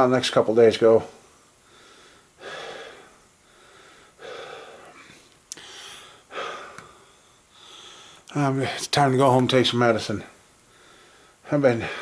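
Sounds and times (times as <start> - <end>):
man breathing heavily: 1.2 - 8.8, 10.6 - 12.0.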